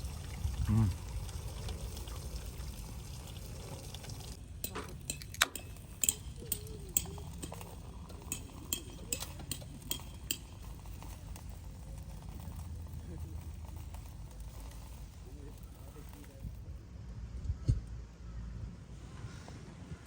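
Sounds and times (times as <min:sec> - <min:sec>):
light ringing clinks: 0:04.6 - 0:11.4.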